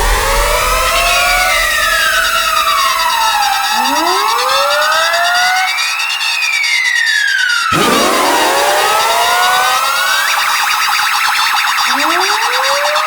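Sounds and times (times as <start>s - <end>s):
harsh high buzz: 0.0s - 6.4s, 7.7s - 13.0s
rising tones: 0.0s - 6.4s, 7.0s - 13.0s
electronic alarm wail: 0.0s - 13.0s.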